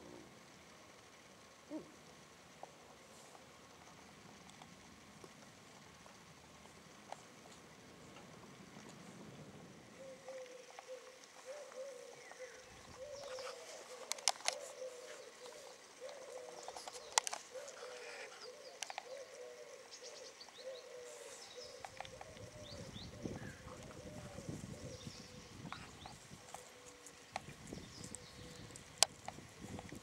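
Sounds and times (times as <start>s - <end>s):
bird cooing: 0.0s - 0.4s, 1.6s - 2.0s, 9.8s - 30.0s.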